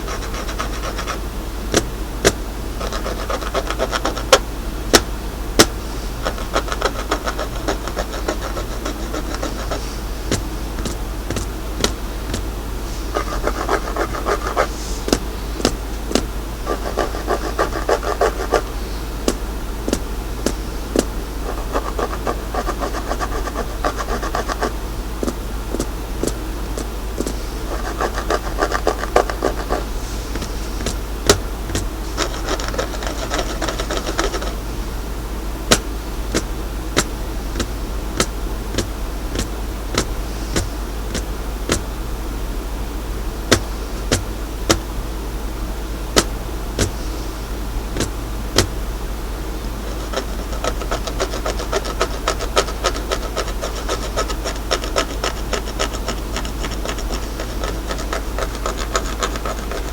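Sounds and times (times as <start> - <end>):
fast scratching: 0.0 - 35.0, 35.7 - 41.9, 43.5 - 44.9, 46.2 - 48.8, 49.6 - 59.9
sharp taps: 1.7 - 12.5, 13.2 - 16.3, 19.3 - 29.8, 30.4 - 34.5, 35.7 - 41.9, 43.5 - 44.9, 46.2 - 47.0, 48.0 - 48.8.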